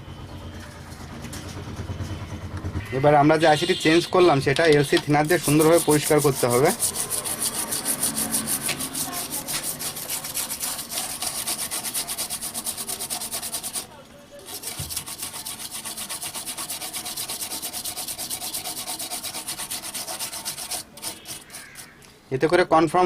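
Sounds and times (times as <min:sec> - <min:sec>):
scrubbing circuit board: 0:03.6 - 0:22.0.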